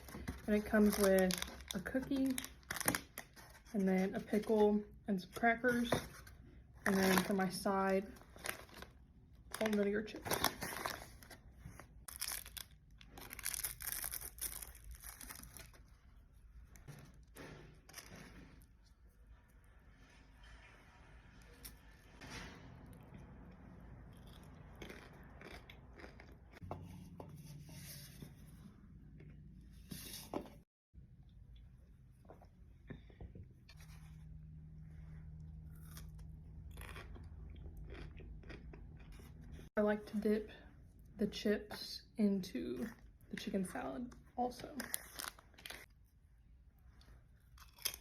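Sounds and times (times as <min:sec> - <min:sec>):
food packaging rustling: 0:06.9 - 0:16.0
chip bag rustling and tearing: 0:12.1 - 0:16.0.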